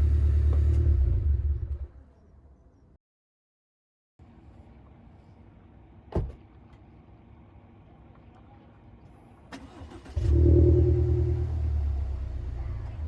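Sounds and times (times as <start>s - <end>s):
thump: 6.1s - 6.4s
car engine idling: 9.1s - 13.0s
car engine starter crank: 9.5s - 10.4s.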